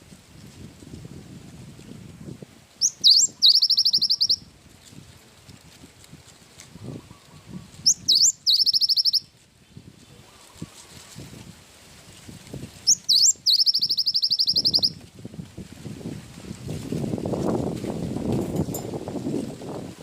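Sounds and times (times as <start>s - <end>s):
bird singing trills: 2.8s - 4.5s, 7.8s - 9.3s, 12.9s - 15.0s.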